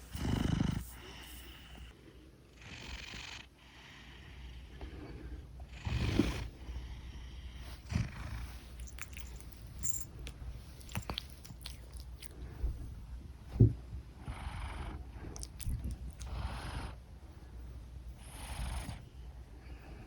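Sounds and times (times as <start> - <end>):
cat purring: 0.0 - 1.9, 2.5 - 17.1, 18.1 - 20.0
cat snoring breaths: 0.0 - 2.0, 2.6 - 9.4, 14.2 - 17.0, 18.2 - 20.0.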